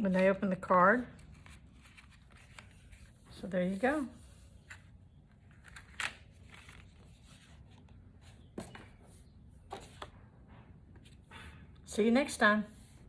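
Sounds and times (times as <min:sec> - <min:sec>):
card rustling: 0:01.0 - 0:09.0.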